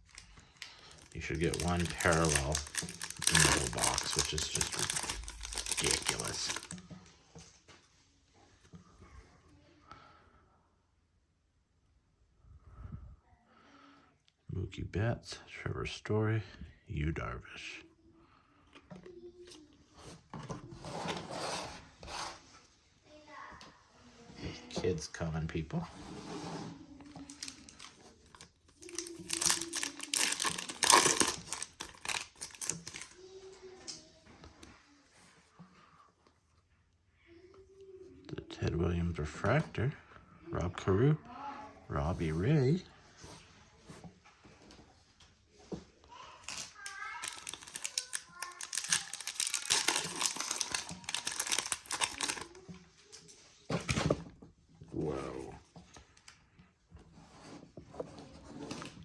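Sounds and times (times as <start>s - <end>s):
cards being handled: 0.0s - 6.8s, 27.1s - 33.2s, 46.4s - 52.6s
foil wrapper crinkling: 0.0s - 6.8s, 27.2s - 33.2s, 46.4s - 52.6s.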